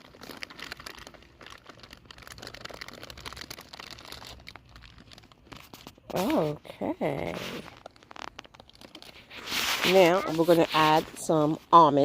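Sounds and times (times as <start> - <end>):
rustling of food: 0.0 - 12.0.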